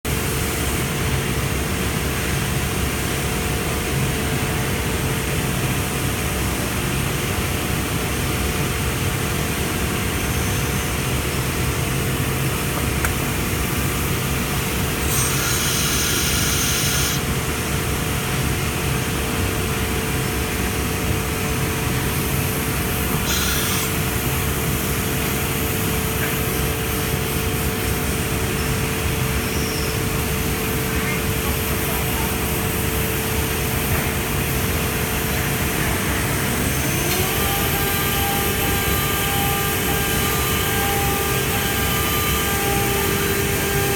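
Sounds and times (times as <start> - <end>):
machine humming with steady tones: 0.1 - 43.9
pneumatic hiss: 14.9 - 17.3, 23.1 - 27.5.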